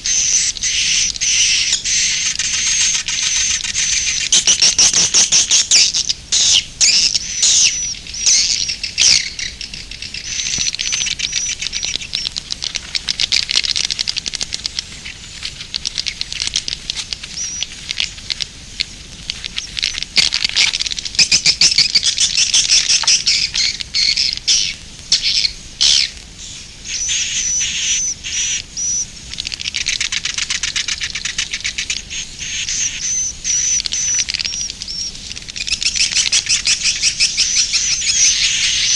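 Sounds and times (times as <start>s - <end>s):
birds chirping and twittering: 0.0s - 38.9s
rapid bird clicking: 9.0s - 24.6s, 29.3s - 38.8s.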